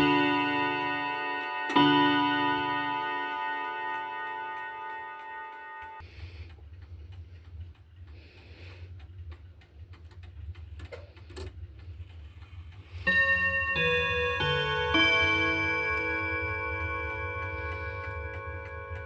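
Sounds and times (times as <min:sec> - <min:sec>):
clock chimes playing a tune: 0:00.0 - 0:06.0, 0:13.0 - 0:19.0
clock ticking: 0:00.0 - 0:19.0.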